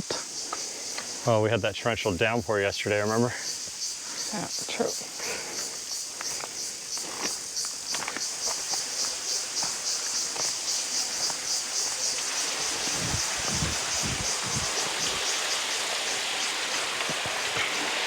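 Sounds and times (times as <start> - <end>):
pulsing insect chorus: 0.0 - 18.0
footsteps on a trail: 5.2 - 15.2.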